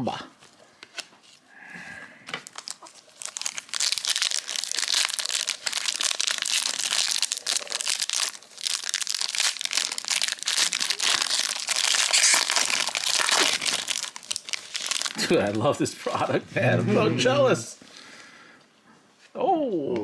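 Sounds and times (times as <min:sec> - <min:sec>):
foil wrapper tearing and crinkling: 0:02.4 - 0:15.6.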